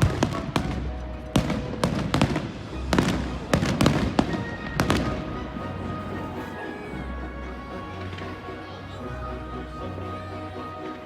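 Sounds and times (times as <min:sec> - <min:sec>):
fireworks banging: 0:00.0 - 0:06.0
music playing: 0:00.0 - 0:11.0.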